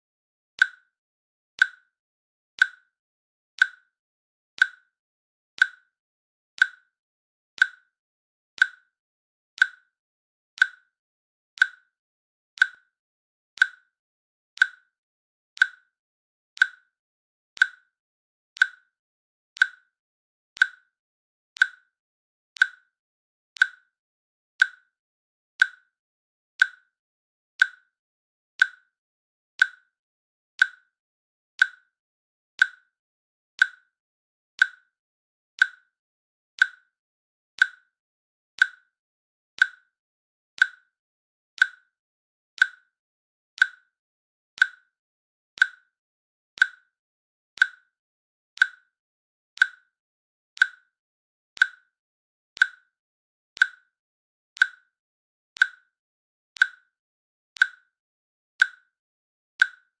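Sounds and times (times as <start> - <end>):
timer clicks ticking: 0.6 - 0.9, 1.6 - 1.9, 2.6 - 2.9, 3.6 - 3.9, 4.6 - 4.9, 5.6 - 5.9, 6.6 - 6.9, 7.6 - 7.9, 8.6 - 8.9, 9.6 - 9.9, 10.6 - 10.9, 11.6 - 11.9, 12.6 - 12.9, 13.6 - 13.9, 14.6 - 14.9, 15.6 - 15.9, 16.6 - 16.9, 17.6 - 17.9, 18.6 - 18.9, 19.6 - 19.9, 20.6 - 20.9, 21.6 - 21.9, 22.6 - 22.9, 23.6 - 23.9, 24.6 - 24.9, 25.6 - 25.9, 26.6 - 26.9, 27.6 - 27.9, 28.6 - 28.9, 29.6 - 29.9, 30.6 - 30.9, 31.6 - 31.9, 32.6 - 32.9, 33.6 - 33.9, 34.6 - 34.9, 35.6 - 35.9, 36.6 - 36.9, 37.6 - 37.9, 38.6 - 38.9, 39.6 - 39.9, 40.6 - 41.0, 41.6 - 41.9, 42.6 - 42.9, 43.6 - 43.9, 44.6 - 44.9, 45.6 - 45.9, 46.6 - 46.9, 47.6 - 47.9, 48.6 - 48.9, 49.6 - 49.9, 50.6 - 50.9, 51.6 - 51.9, 52.6 - 52.9, 53.6 - 53.9, 54.6 - 54.9, 55.6 - 55.9, 56.6 - 56.9, 57.6 - 57.9, 58.6 - 58.9, 59.6 - 59.9.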